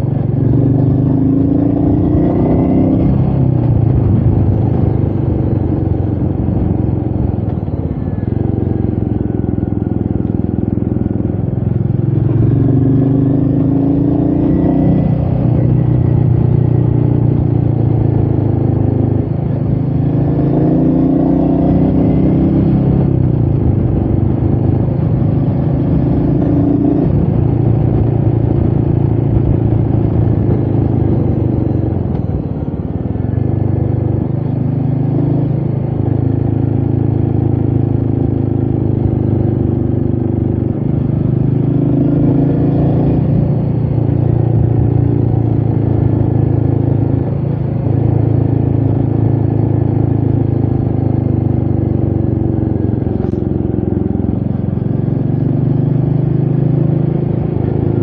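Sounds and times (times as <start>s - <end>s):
wind noise: 0.0s - 9.9s, 13.8s - 37.3s
motorcycle engine running: 0.0s - 58.0s.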